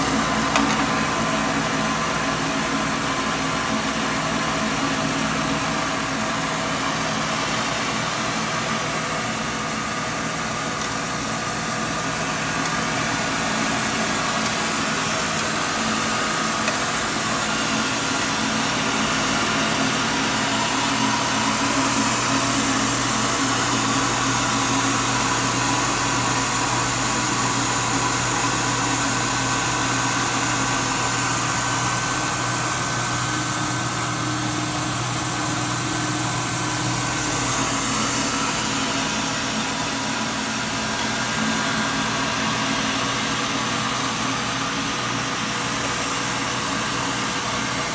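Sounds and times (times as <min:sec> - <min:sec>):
rice milling machine running: 0:00.0 - 0:47.9.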